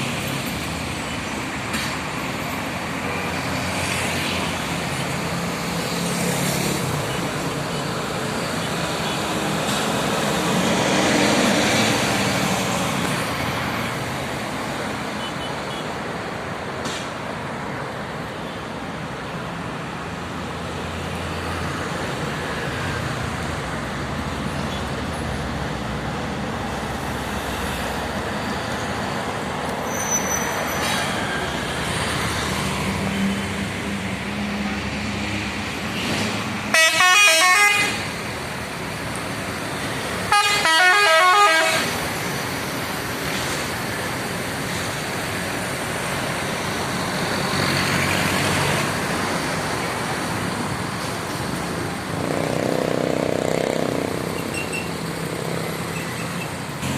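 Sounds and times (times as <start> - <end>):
road traffic passing: 0.0 - 56.9
bus musical horn: 36.7 - 38.1, 40.2 - 42.0.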